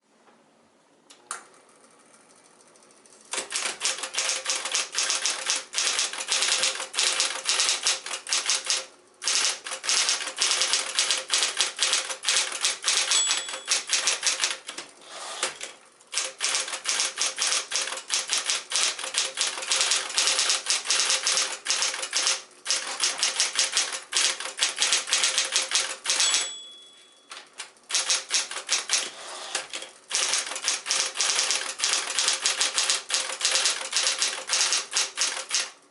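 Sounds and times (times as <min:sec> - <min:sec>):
typewriter motor hum: 0:02.2 - 0:26.4, 0:27.6 - 0:35.8
typewriter key strikes: 0:03.3 - 0:14.8, 0:15.5 - 0:35.7
typewriter margin bell ring: 0:03.5 - 0:14.6, 0:15.6 - 0:29.1.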